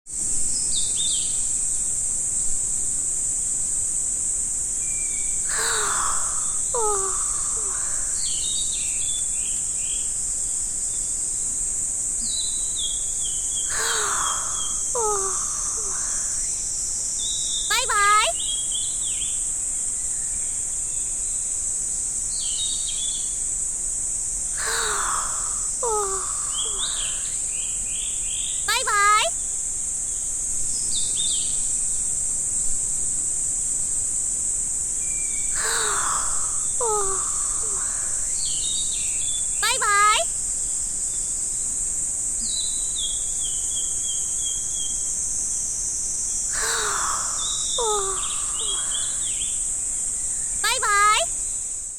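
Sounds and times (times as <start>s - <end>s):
high-pitched insect chorus: 0.1s - 51.9s
bird chirps: 4.9s - 10.0s, 12.2s - 16.6s, 17.2s - 19.3s, 24.6s - 29.3s, 46.5s - 49.6s
high-pitched insect drone: 5.1s - 8.8s, 12.2s - 18.5s, 24.1s - 27.7s, 35.4s - 40.4s, 45.1s - 51.4s
descending pitched calls: 5.5s - 8.2s, 13.7s - 16.4s, 17.7s - 18.4s, 24.6s - 27.4s, 28.7s - 29.3s, 35.6s - 38.3s, 39.6s - 40.3s, 46.6s - 49.3s, 50.6s - 51.3s.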